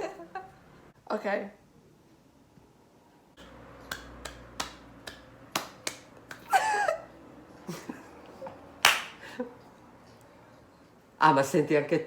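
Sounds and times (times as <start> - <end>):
sharp snaps or clicks: 3.4 - 6.4.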